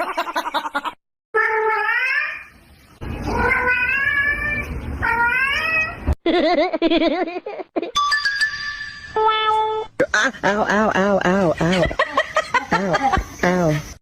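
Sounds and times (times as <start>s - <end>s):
cat meowing: 3.3s - 6.0s.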